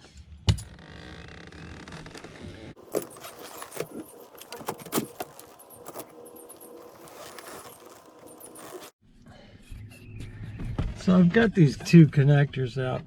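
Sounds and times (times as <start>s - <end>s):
metal parts clinking: 2.8s - 8.9s
rustling: 2.8s - 9.0s.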